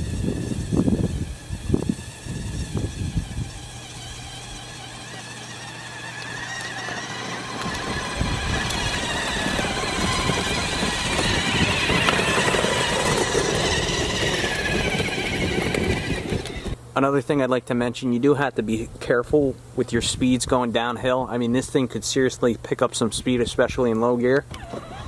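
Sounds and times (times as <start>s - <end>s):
toy truck motors whining: 0.0s - 16.8s, 24.5s - 25.0s
wheels rumbling on ground: 0.0s - 16.8s.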